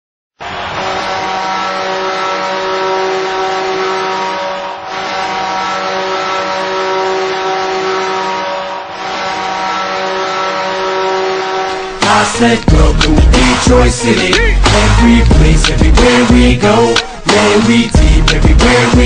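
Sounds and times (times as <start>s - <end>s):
hockey goal horn blasts: 0.4s - 12.0s.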